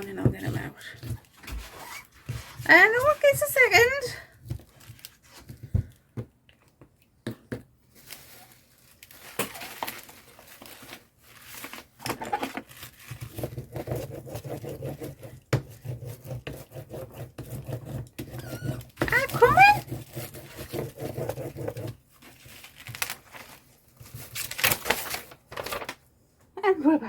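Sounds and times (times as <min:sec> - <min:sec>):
cardboard packaging crinkling: 0:04.5 - 0:05.6, 0:07.8 - 0:13.4, 0:22.1 - 0:26.1.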